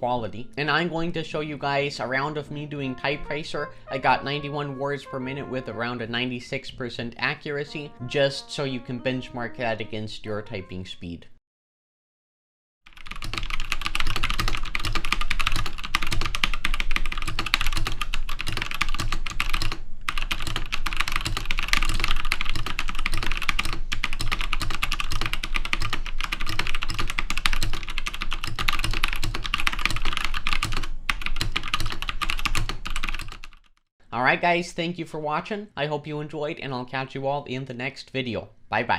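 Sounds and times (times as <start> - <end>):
mechanical keyboard typing: 12.9 - 33.7.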